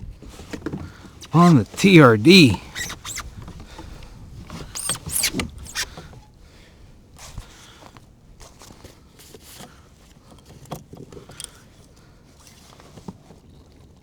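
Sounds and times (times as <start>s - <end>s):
faint steady background: 1.4s - 2.6s.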